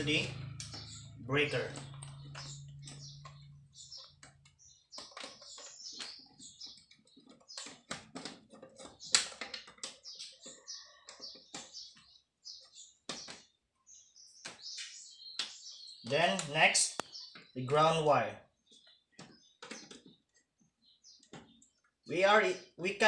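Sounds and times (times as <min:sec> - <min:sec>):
birds chirping: 0:00.0 - 0:23.0
clicks and taps of wires and tool: 0:01.7 - 0:12.1, 0:14.4 - 0:17.5, 0:18.8 - 0:20.4.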